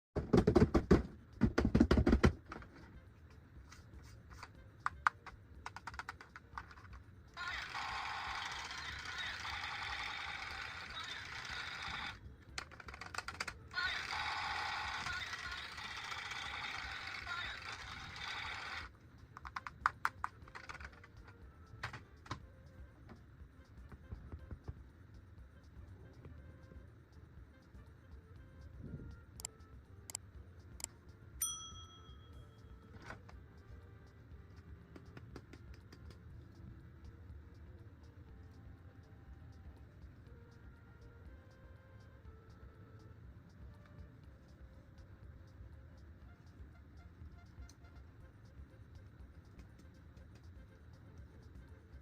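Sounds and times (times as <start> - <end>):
toys and packaging clicking: 4.4 - 14.1, 14.9 - 22.4
plastic toy parts clicking: 12.6 - 13.6, 19.4 - 22.4.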